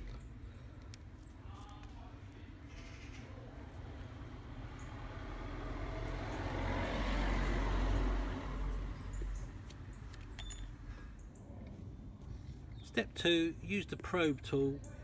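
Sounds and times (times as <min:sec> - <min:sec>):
vehicle passing by: 0:03.3 - 0:12.6.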